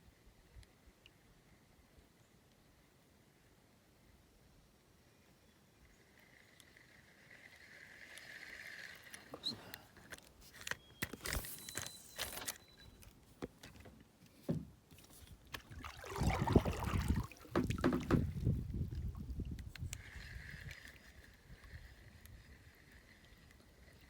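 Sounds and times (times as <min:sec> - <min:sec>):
fishing gear knocking against hull: 0:15.6 - 0:18.7.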